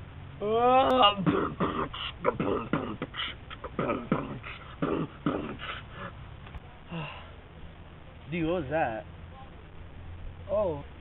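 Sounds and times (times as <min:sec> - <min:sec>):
beatbox mouth percussion: 0:00.9 - 0:05.8.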